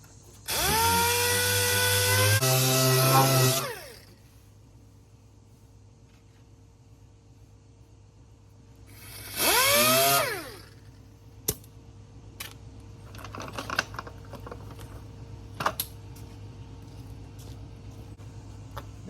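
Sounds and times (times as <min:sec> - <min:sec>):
power sander whining: 0:00.5 - 0:04.2, 0:09.0 - 0:10.8.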